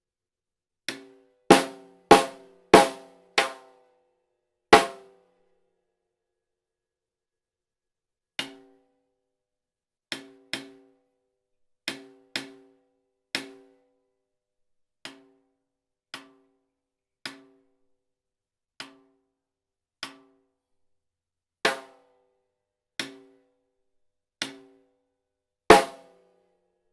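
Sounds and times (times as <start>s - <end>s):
snare drum hits: 1.5s - 3.6s, 4.8s - 5.0s, 25.7s - 26.1s.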